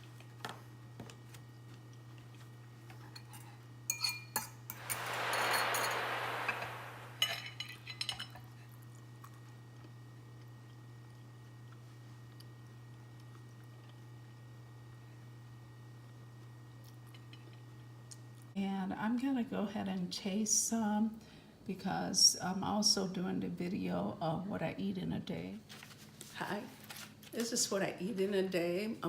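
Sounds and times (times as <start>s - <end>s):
hissing rush: 4.7s - 7.3s
low hum: 4.7s - 7.5s.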